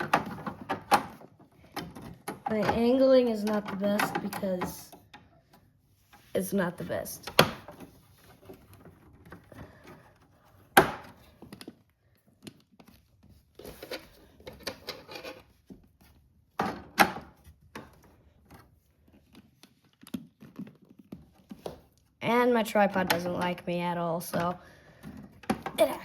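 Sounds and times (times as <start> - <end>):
plastic toy parts knocking: 0.0 - 5.2.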